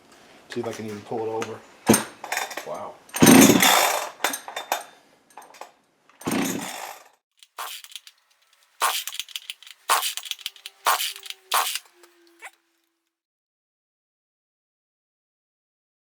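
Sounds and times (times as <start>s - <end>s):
chainsaw pull-start clicks: 7.4s - 8.1s, 8.7s - 12.4s.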